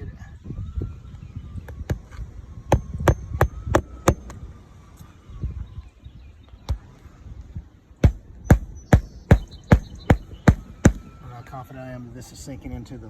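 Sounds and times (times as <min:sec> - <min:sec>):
hammer strikes on shingle roof: 0:02.7 - 0:04.3, 0:08.0 - 0:11.1.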